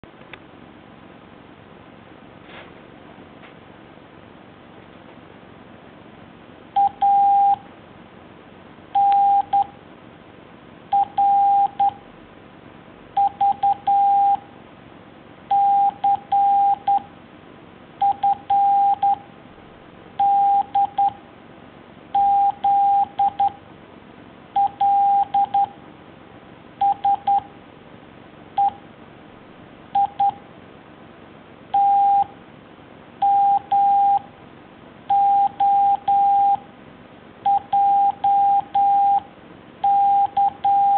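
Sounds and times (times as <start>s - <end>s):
morse code beeps: 6.8s - 7.6s, 9.0s - 9.7s, 10.9s - 12.0s, 13.2s - 14.4s, 15.5s - 17.1s, 18.0s - 19.2s, 20.2s - 21.2s, 22.2s - 23.6s, 24.6s - 25.7s, 26.8s - 27.5s, 28.6s - 28.8s, 30.0s - 30.4s, 31.8s - 32.3s, 33.2s - 34.2s, 35.1s - 36.6s, 37.4s - 39.2s, 39.8s - 40.9s.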